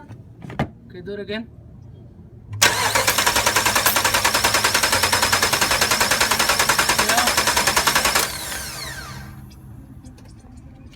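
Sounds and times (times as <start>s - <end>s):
starter cranking engine: 2.6s - 9.5s.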